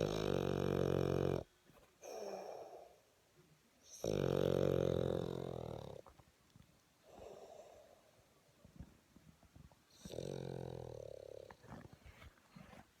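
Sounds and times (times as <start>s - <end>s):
dog snoring: 0.0s - 2.8s, 3.9s - 6.1s, 9.9s - 11.8s.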